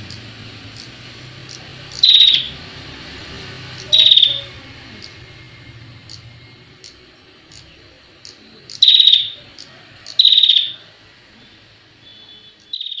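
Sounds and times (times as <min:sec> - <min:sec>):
bird rattling trill calls: 0:00.1 - 0:02.6, 0:03.8 - 0:05.2, 0:06.0 - 0:10.8, 0:12.6 - 0:13.0
soft bird chirps: 0:00.1 - 0:02.6, 0:03.8 - 0:05.2, 0:06.0 - 0:10.8, 0:11.4 - 0:13.0.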